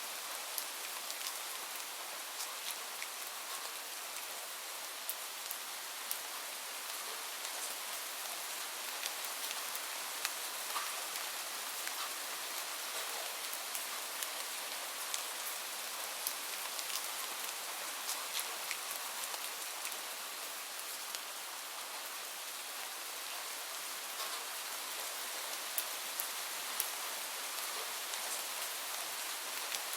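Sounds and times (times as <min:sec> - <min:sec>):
light rain falling: 0:00.0 - 0:29.9
raindrops pattering: 0:00.1 - 0:04.3, 0:05.0 - 0:21.3.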